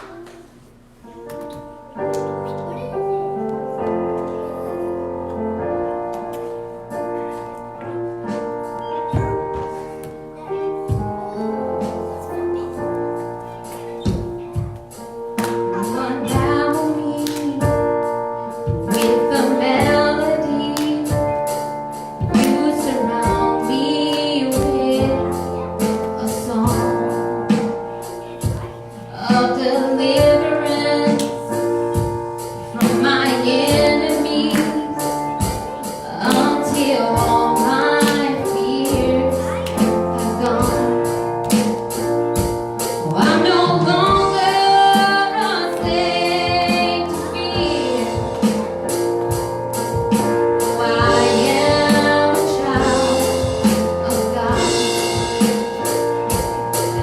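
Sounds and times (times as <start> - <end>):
keyboard chords: 0.0 - 57.0
woman singing: 15.7 - 18.0, 18.9 - 21.6, 22.2 - 27.3, 29.1 - 31.4, 32.7 - 41.2, 43.0 - 48.7, 50.6 - 56.0.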